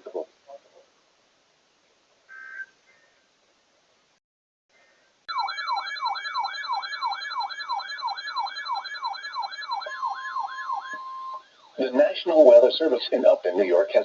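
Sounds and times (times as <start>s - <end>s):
steady electronic tone: 5.3s - 11.8s
electronic siren falling sweep: 5.3s - 12.2s
steady high tones: 5.3s - 12.5s.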